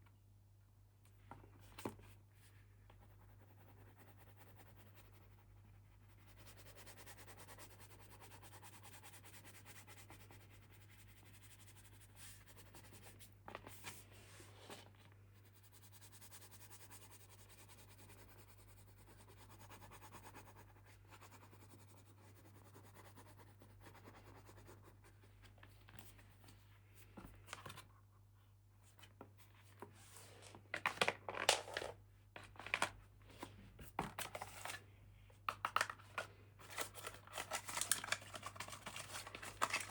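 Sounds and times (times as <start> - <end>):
scratching and rubbing packaging: 30.1 - 32.9, 34.2 - 34.8, 36.6 - 39.9
wrapping crinkling and tearing: 36.6 - 39.9.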